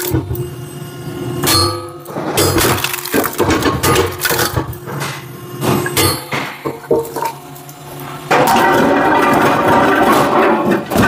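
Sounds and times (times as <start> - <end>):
hydraulic unit humming: 0.0 - 11.0.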